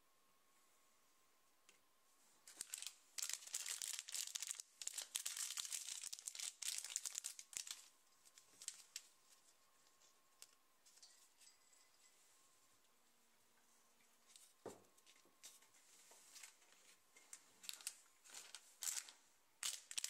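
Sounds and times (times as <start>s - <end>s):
plastic wrapper tearing and crinkling: 2.5s - 9.1s, 17.6s - 20.0s.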